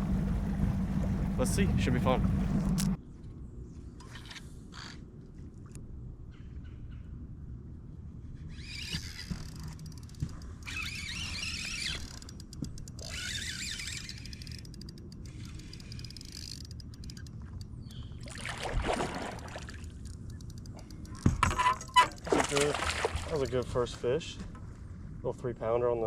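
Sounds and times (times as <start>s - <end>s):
fishing reel clicking: 8.6s - 17.9s, 19.9s - 21.2s
fish splashing at water surface: 18.2s - 20.0s, 22.1s - 23.7s
splash and thud: 18.3s - 19.7s, 22.2s - 23.6s.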